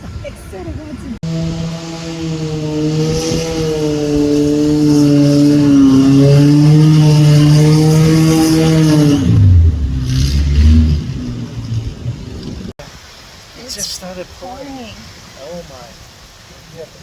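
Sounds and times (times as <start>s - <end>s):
motor engine humming: 0.0s - 12.8s
steady hiss: 12.8s - 17.0s.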